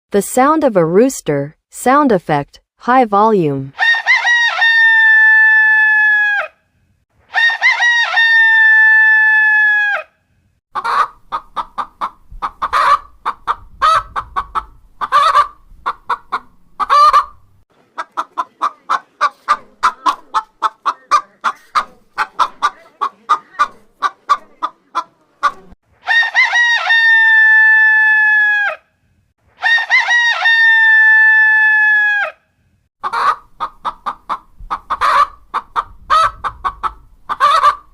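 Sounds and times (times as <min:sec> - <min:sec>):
rooster crowing: 0:03.8 - 0:06.6, 0:07.3 - 0:10.2, 0:26.1 - 0:28.8, 0:29.6 - 0:32.4
rapid clucking: 0:10.8 - 0:25.8, 0:33.0 - 0:37.9.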